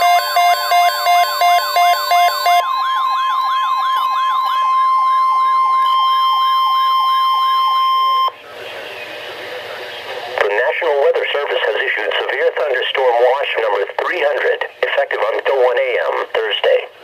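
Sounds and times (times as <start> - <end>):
steady alert tone: 0.0 - 2.7
pulsing beeping tone: 0.0 - 3.0
electronic siren yelps: 0.0 - 8.3.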